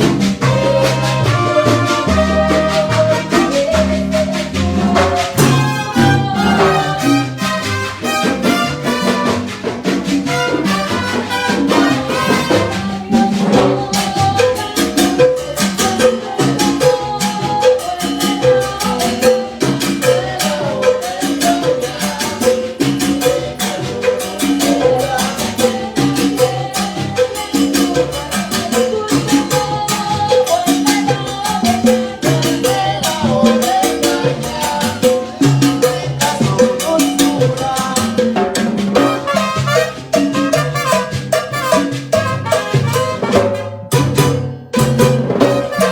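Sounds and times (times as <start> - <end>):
repeating bass line: 0.0 - 13.0
salsa band playing live: 0.0 - 45.9
steady percussion rhythm: 0.0 - 45.9.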